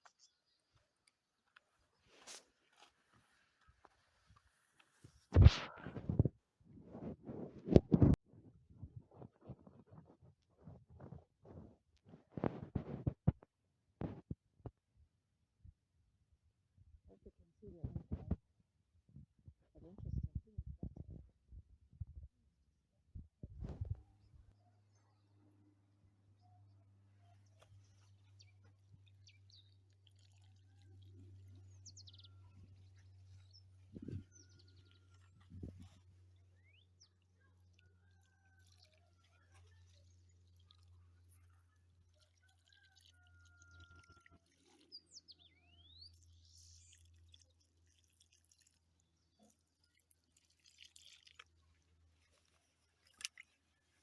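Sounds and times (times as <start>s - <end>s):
faint bird chirps and trills: 26.3s - 50.0s
faint rustles and clicks: 50.5s - 54.0s.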